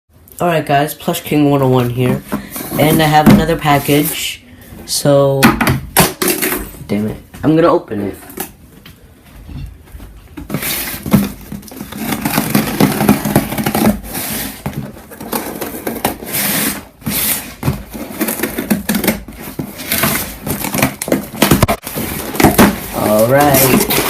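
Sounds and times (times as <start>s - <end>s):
wrapping rustling and ripping: 10.5s - 24.0s.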